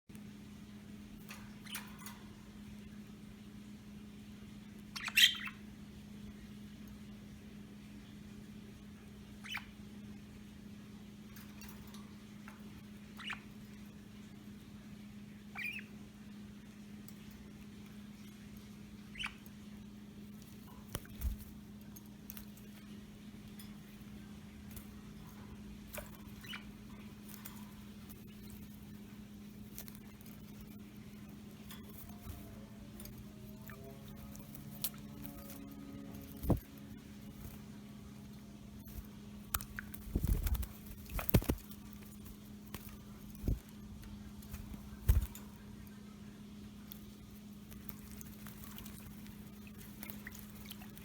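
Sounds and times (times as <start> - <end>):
steady low hum: 0.1 - 51.0
birds splashing in water: 46.8 - 51.0.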